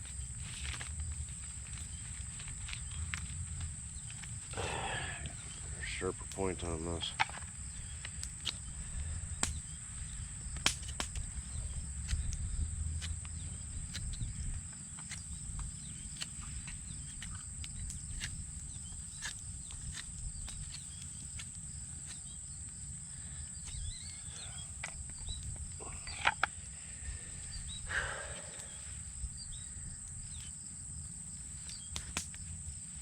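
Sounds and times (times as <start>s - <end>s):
high-pitched insect chorus: 0.0s - 33.0s
sharp clicks and snaps: 8.0s - 8.6s, 10.6s - 11.3s.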